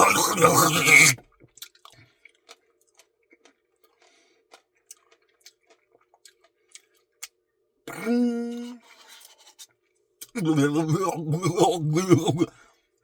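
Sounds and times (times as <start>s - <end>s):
chewing ice cream with crunches: 0.0s - 8.0s.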